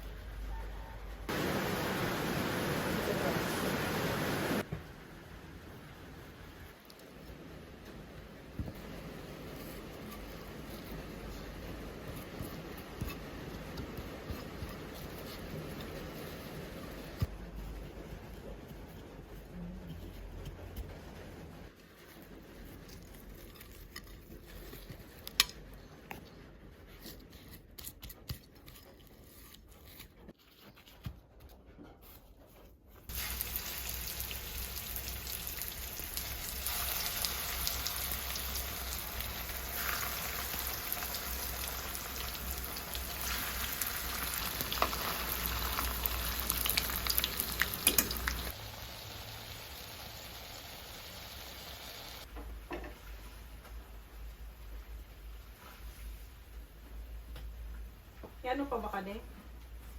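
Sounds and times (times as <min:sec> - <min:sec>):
food sizzling in hot oil: 0:33.1 - 0:52.3.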